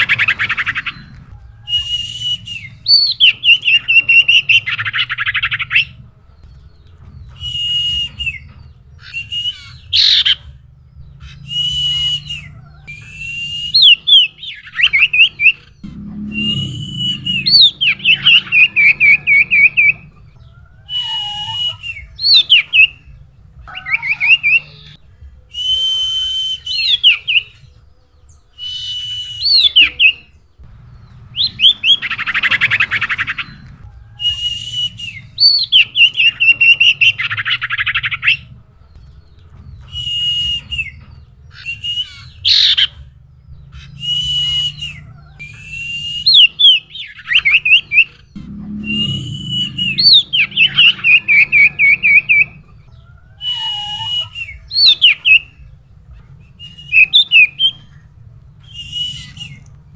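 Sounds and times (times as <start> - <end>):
bird singing whistled notes: 7.3 - 10.4, 11.3 - 20.0, 43.8 - 55.6, 56.6 - 58.0, 58.6 - 59.7.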